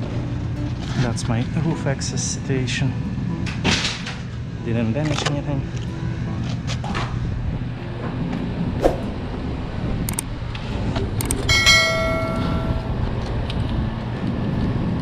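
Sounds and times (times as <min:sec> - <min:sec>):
metal struck ringing: 0:11.5 - 0:13.1.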